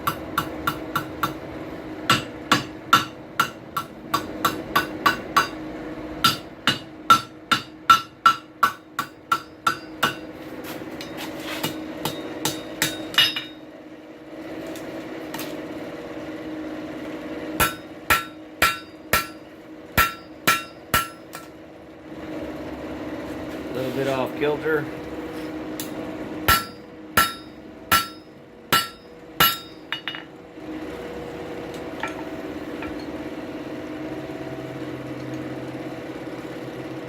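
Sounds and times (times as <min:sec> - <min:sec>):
hammer striking steel on anvil: 0:00.0 - 0:01.4, 0:02.1 - 0:05.6, 0:06.2 - 0:10.3, 0:11.0 - 0:13.6, 0:17.6 - 0:19.4, 0:20.0 - 0:21.6, 0:25.8 - 0:30.3
steady hum: 0:00.0 - 0:37.0.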